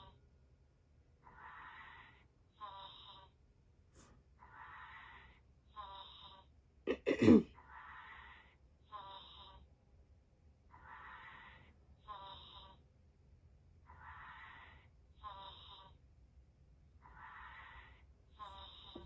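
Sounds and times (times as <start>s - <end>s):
toy snoring through speaker: 1.2s - 3.4s, 4.4s - 9.7s, 10.7s - 12.8s, 13.9s - 16.0s, 17.0s - 19.0s.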